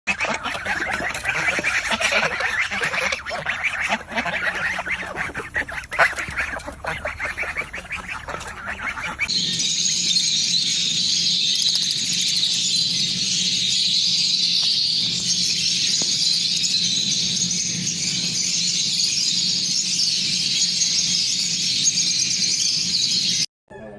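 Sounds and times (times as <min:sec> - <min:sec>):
geese honking: 0:00.1 - 0:09.3.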